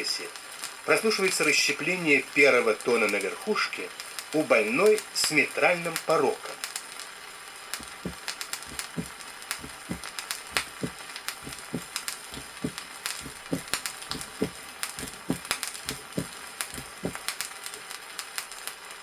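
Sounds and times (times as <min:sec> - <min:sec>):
heartbeat low thuds: 0:07.8 - 0:17.2.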